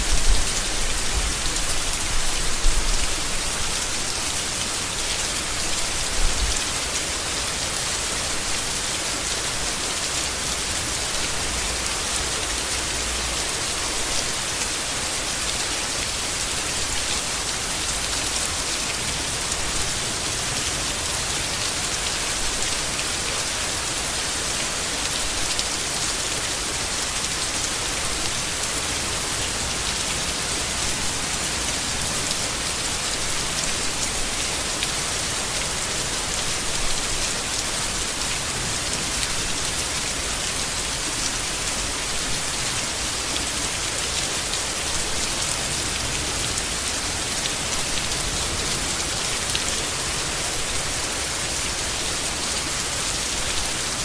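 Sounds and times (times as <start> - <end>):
heavy rain on leaves: 0.0 - 54.0.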